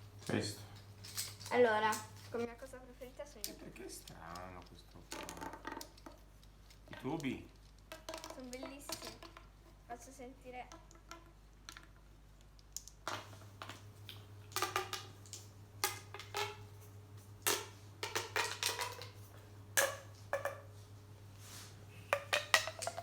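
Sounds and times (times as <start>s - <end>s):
plastic tubes popping and clicking: 3.4s - 9.8s, 10.6s - 16.7s, 17.4s - 19.2s, 19.8s - 20.7s, 22.1s - 23.0s.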